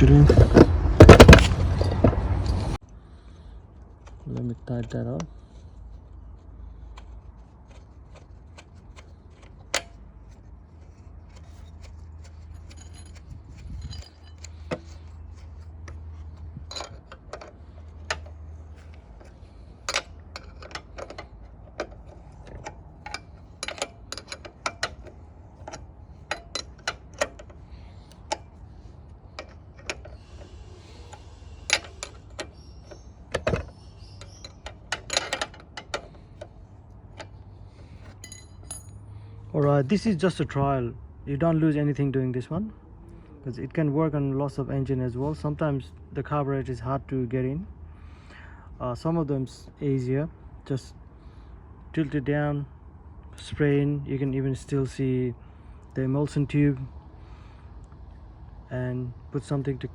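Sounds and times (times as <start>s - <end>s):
hand tools clinking on metal: 10.8s - 28.5s, 31.0s - 36.5s, 37.2s - 39.8s.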